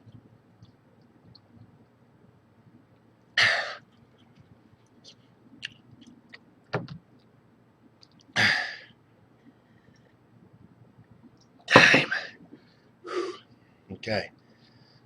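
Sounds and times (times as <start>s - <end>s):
man coughing and hacking: 11.7s - 12.3s.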